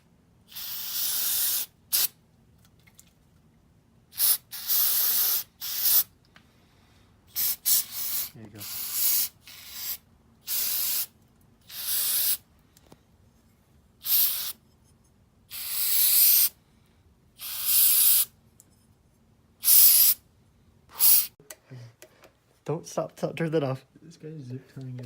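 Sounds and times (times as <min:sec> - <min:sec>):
aerosol spray hissing: 0:00.5 - 0:02.1, 0:04.1 - 0:06.1, 0:07.3 - 0:12.4, 0:14.0 - 0:14.6, 0:15.5 - 0:16.6, 0:17.4 - 0:18.3, 0:19.6 - 0:20.2, 0:20.9 - 0:21.4.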